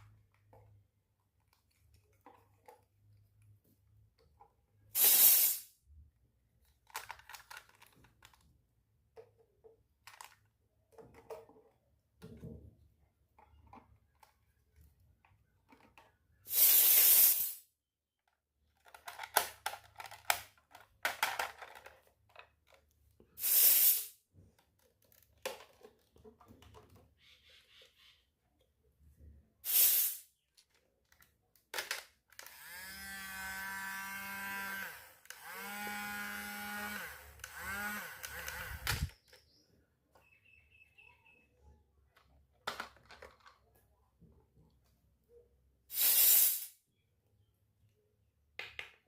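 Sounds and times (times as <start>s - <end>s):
short hissing bursts: 5.0s - 5.8s, 16.5s - 17.7s, 23.4s - 24.2s, 29.6s - 30.3s, 45.9s - 46.8s
plastic toy pieces clicking: 6.6s - 8.4s, 9.2s - 11.7s, 18.2s - 22.9s, 30.5s - 32.6s.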